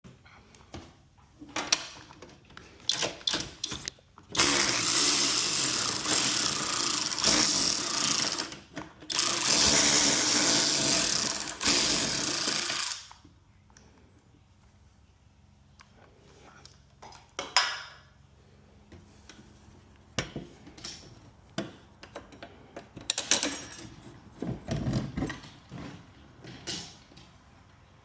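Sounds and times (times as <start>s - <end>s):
power tool running: 4.4s - 13.1s.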